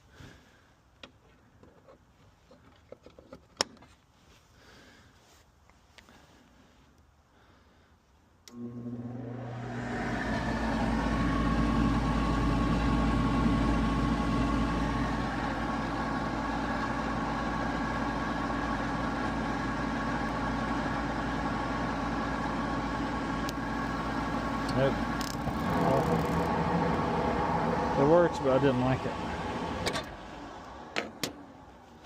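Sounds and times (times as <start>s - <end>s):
fan motor running: 8.5s - 32.0s.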